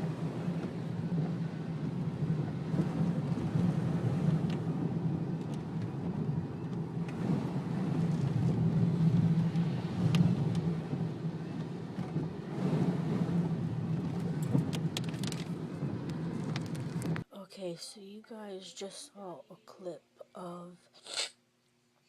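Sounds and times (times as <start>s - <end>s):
car engine and road rumble: 0.0s - 17.3s.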